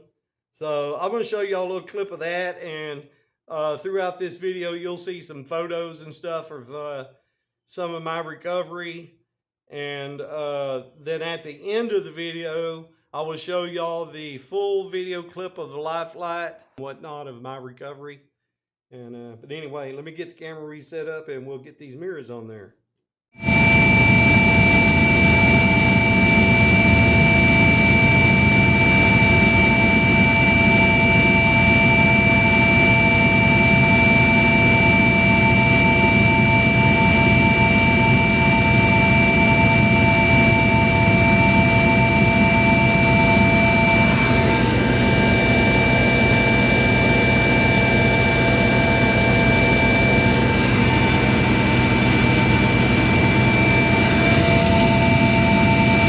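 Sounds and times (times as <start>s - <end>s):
helicopter engine rumble: 23.4s - 56.0s
high turbine whines: 23.4s - 56.0s.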